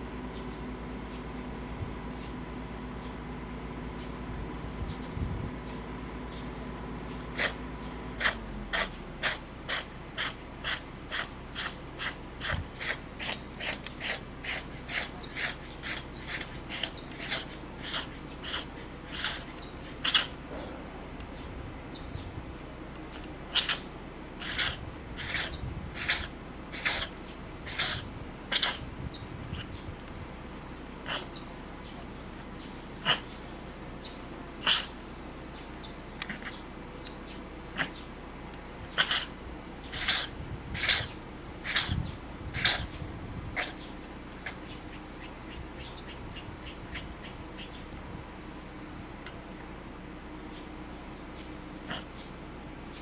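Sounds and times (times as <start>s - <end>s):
cat sneezing: 7.4s - 7.6s, 8.2s - 20.4s, 23.5s - 27.1s, 27.7s - 28.8s, 31.1s - 31.3s, 33.0s - 33.3s, 34.6s - 34.9s, 36.3s - 36.6s, 38.9s - 39.3s, 39.9s - 42.0s, 42.6s - 42.9s, 43.6s - 43.8s, 51.9s - 52.1s.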